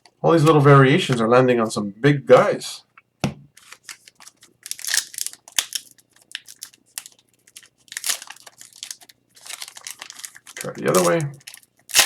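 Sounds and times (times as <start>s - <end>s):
foil wrappers and cards crinkling: 3.6s - 12.0s.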